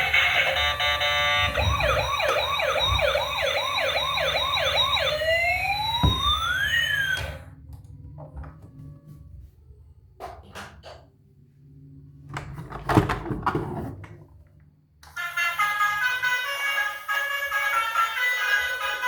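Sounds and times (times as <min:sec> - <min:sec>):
toy electronic siren wail: 0:00.0 - 0:07.5.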